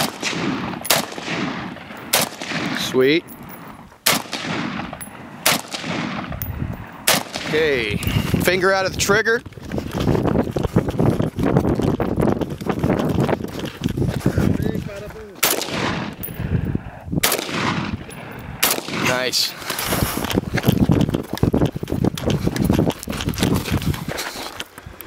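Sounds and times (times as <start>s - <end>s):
loud rifle shots with echo: 0.0s - 3.1s, 4.0s - 7.8s, 15.4s - 16.2s, 17.2s - 19.4s
rough crackling background noise: 0.0s - 25.0s.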